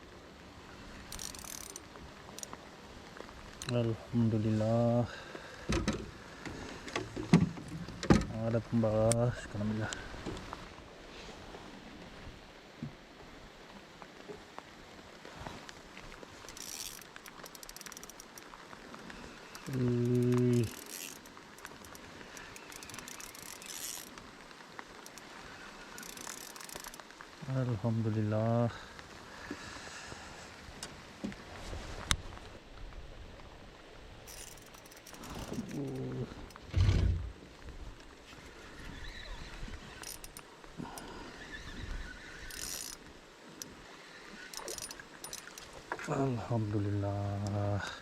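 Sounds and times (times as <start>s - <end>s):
fishing reel whirring and clicking: 1.1s - 2.5s, 16.5s - 18.5s, 19.4s - 24.1s, 25.0s - 27.0s, 34.3s - 35.8s, 39.2s - 40.5s, 41.7s - 43.0s, 44.4s - 45.7s
man humming: 35.5s - 36.4s.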